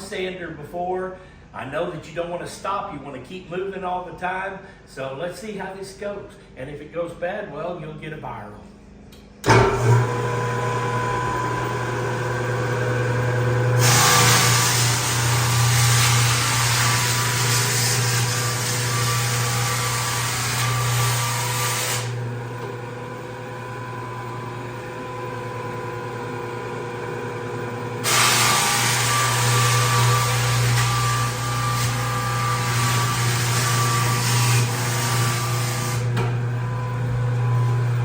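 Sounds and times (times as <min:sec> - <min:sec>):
sander motor hum: 0:09.5 - 0:38.0
sanding drum grinding hiss: 0:13.8 - 0:22.1, 0:28.0 - 0:36.1.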